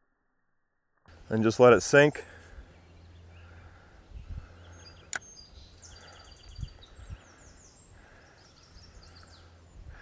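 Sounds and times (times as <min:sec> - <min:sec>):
birds chirping: 0:01.1 - 0:10.0
sharp click: 0:05.1 - 0:05.3.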